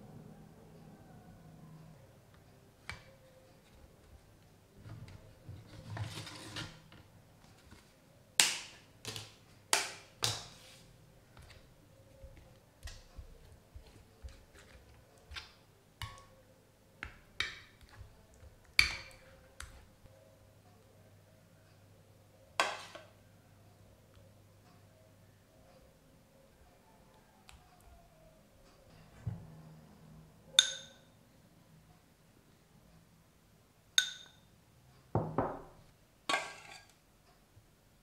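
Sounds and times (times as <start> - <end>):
rustling scrape: 5.6 - 6.9
kitchenware clinking and knocking: 35.2 - 36.9.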